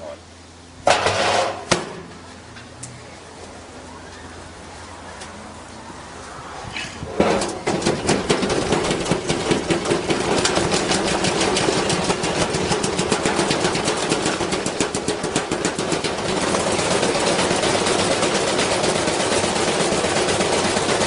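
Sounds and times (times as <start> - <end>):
washing machine spinning: 7.0 - 21.0.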